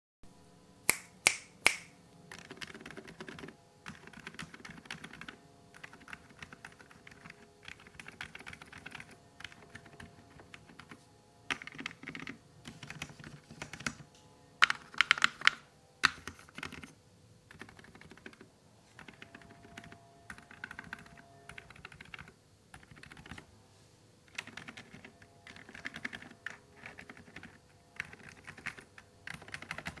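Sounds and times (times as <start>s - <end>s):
loud keyboard clacks: 2.3s - 14.0s, 24.3s - 30.0s
keyboard typing: 2.3s - 23.5s, 24.3s - 30.0s.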